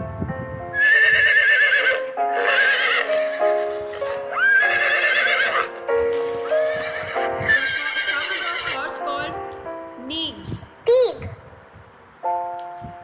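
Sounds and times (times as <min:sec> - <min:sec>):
horse whinnying: 0:00.8 - 0:05.8, 0:06.7 - 0:08.8.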